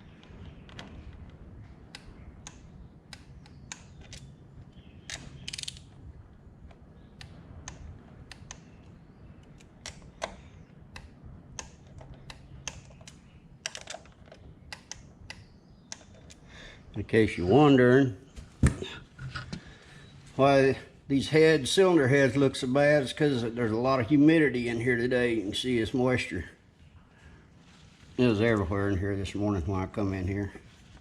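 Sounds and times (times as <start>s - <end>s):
torque wrench clicking and ratcheting: 5.5s - 5.8s.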